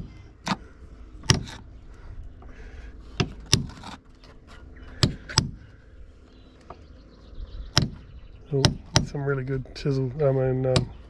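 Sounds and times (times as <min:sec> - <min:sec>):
hammer striking a tool: 0:08.6 - 0:09.2.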